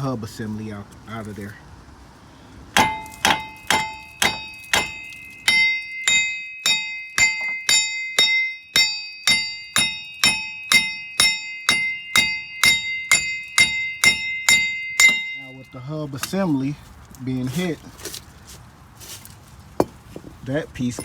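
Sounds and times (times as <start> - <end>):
hammer striking metal hub: 2.8 - 16.5.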